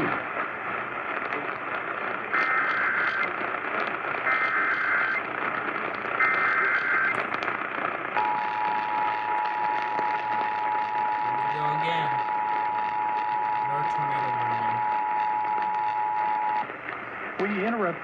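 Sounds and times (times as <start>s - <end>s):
radio hiss and crackle: 0.0s - 18.0s
warbling digital data tones: 4.3s - 5.3s, 6.2s - 7.2s.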